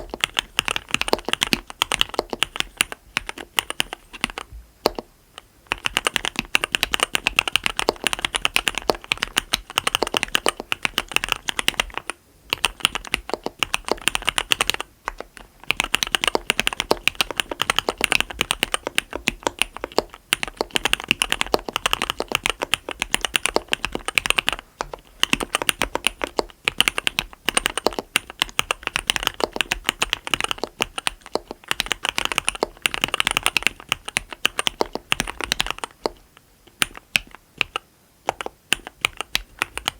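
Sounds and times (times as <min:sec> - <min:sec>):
typing on mechanical keyboard: 0:00.0 - 0:39.9.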